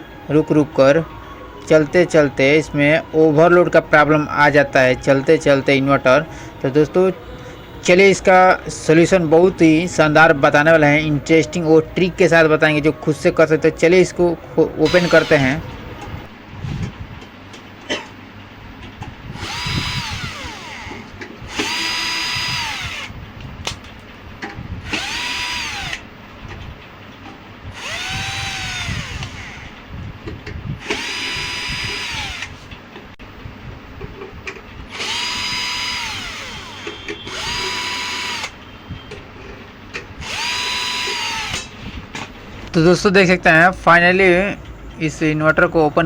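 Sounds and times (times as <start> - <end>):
power drill whining: 14.8 - 16.3, 19.4 - 23.8, 24.8 - 26.1, 27.7 - 29.8, 30.8 - 32.7, 34.9 - 38.6, 40.2 - 41.8.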